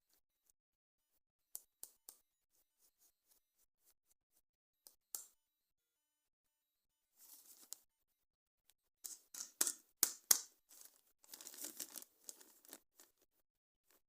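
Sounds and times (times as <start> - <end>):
sharp plastic snaps: 9.1 - 10.5
packaging tearing and crinkling: 10.7 - 12.8.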